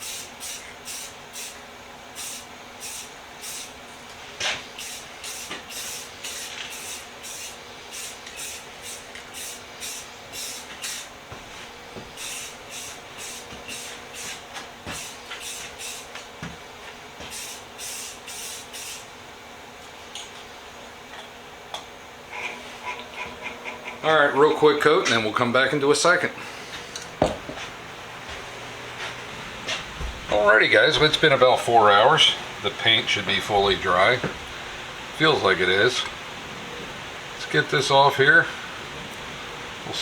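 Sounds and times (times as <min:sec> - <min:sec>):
spray paint hissing: 0:00.0 - 0:01.6, 0:02.2 - 0:03.8, 0:04.7 - 0:11.1, 0:12.1 - 0:16.2, 0:17.2 - 0:19.1.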